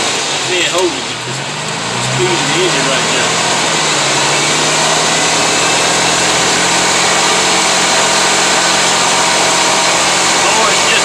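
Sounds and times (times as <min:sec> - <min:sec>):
driveshaft humming and rattling: 0:00.0 - 0:11.0
vehicle engine running: 0:00.0 - 0:11.0.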